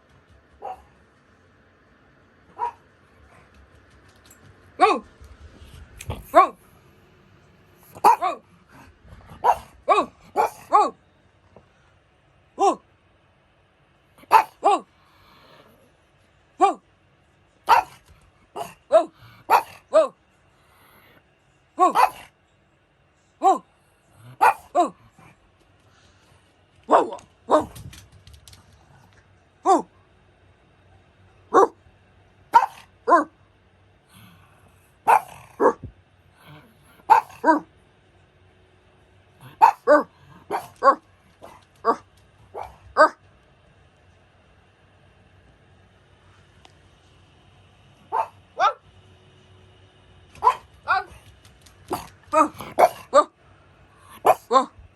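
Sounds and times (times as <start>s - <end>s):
dog barking: 0.6s - 0.9s, 2.5s - 2.8s, 7.9s - 8.4s, 9.3s - 11.0s, 14.2s - 14.9s, 17.7s - 18.0s, 18.6s - 20.2s, 21.8s - 22.3s, 24.4s - 25.0s, 26.9s - 27.8s, 31.5s - 31.8s, 32.5s - 33.3s, 35.0s - 37.7s, 39.4s - 43.2s, 48.0s - 48.8s, 50.4s - 51.2s, 51.9s - 53.4s, 54.1s - 54.7s.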